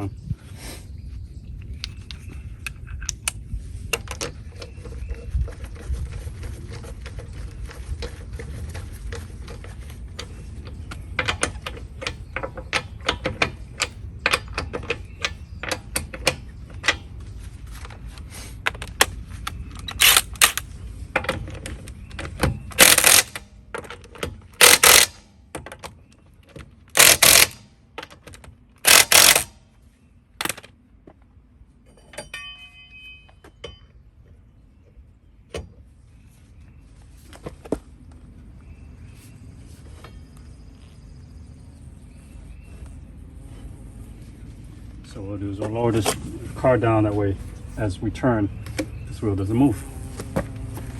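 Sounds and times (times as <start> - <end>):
ratchet wrench clicking: 22.8 - 23.4, 24.6 - 25.2, 27.0 - 27.6, 28.8 - 29.6
ringing metal clinks: 31.8 - 34.0.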